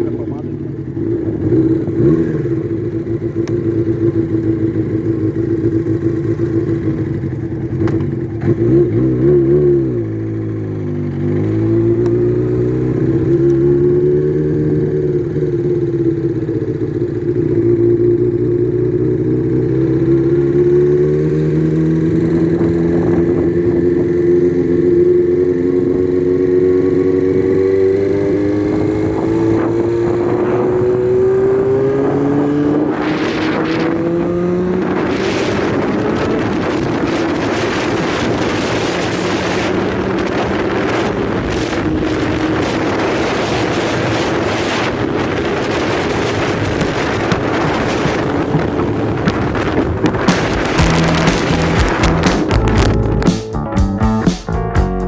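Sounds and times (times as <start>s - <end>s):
motorcycle engine running: 0.0s - 55.0s
wind on microphone: 22.1s - 24.8s, 27.5s - 53.2s.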